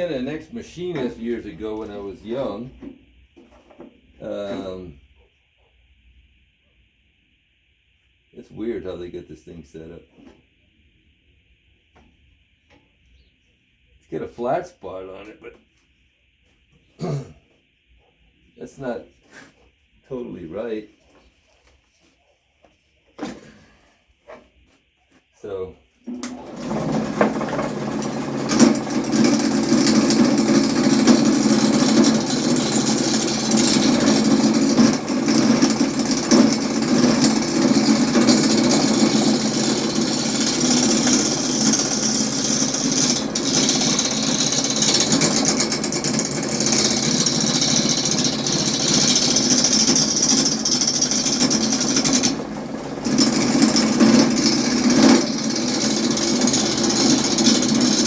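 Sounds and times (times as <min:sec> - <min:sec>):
lathe motor humming: 0:00.0 - 0:02.6, 0:26.1 - 0:58.0.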